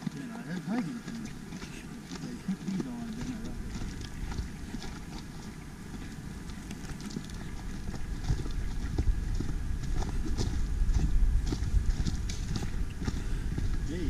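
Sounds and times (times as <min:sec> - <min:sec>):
footsteps crunching on trail: 0:00.0 - 0:14.0
low rumble: 0:02.9 - 0:14.0.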